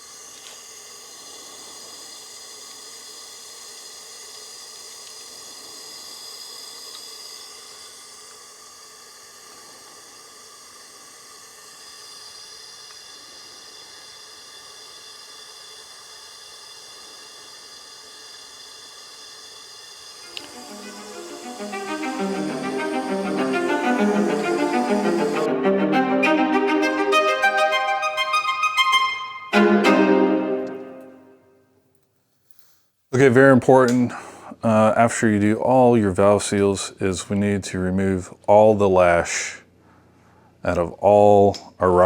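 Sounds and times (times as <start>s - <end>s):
faint hum tones: 20.2s - 31.6s
steady low hiss: 20.2s - 31.6s
music: 20.3s - 31.6s.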